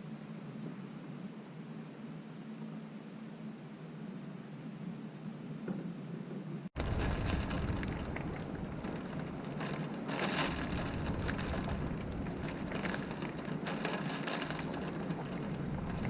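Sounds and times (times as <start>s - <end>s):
rain beating against window: 6.8s - 16.0s.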